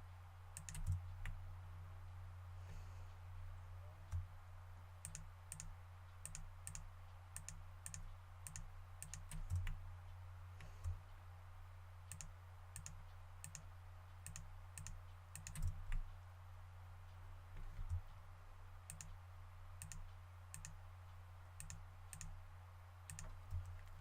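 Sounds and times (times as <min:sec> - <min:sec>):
faint low hum: 0:00.0 - 0:24.0
mouse and keyboard clicking: 0:00.6 - 0:01.4, 0:23.1 - 0:24.0.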